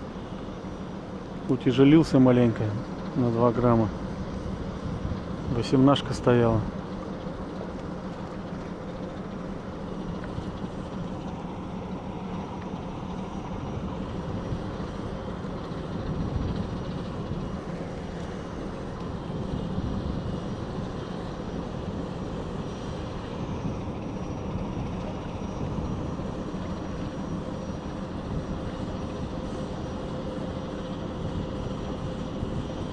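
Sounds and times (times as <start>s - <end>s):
low engine drone: 0.0s - 32.9s.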